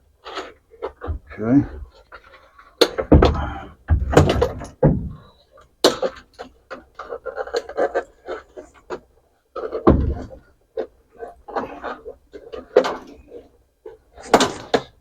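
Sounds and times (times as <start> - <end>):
sharp knocks and thunks: 1.0 - 1.9, 2.9 - 5.3, 9.8 - 10.4.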